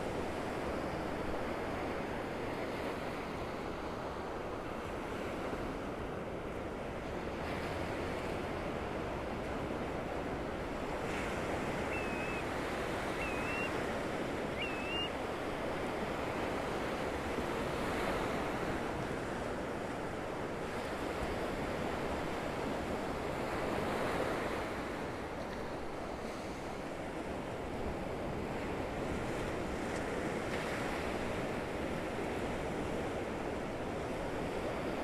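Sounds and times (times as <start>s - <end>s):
bird chirping: 11.9s - 12.4s, 13.2s - 13.8s, 14.5s - 15.1s.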